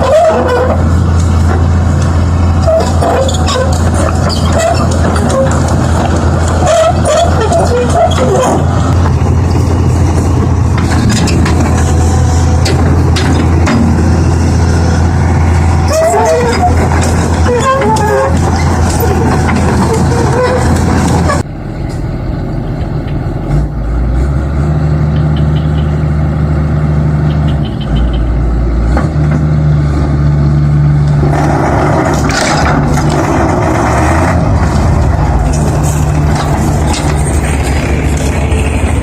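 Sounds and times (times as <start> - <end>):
heavy vehicle engine running: 0.0 - 39.0.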